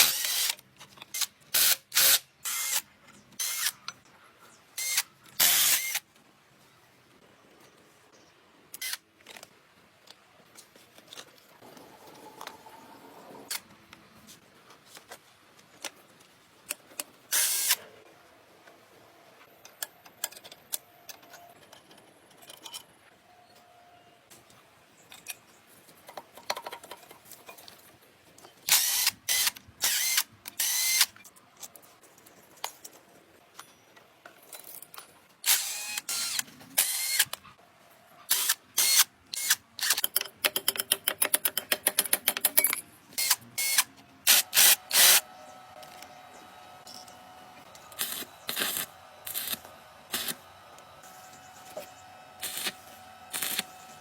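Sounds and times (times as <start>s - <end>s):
power tool bursts: 43.2s - 45.3s, 47.7s - 50.4s, 52.4s - 54.0s.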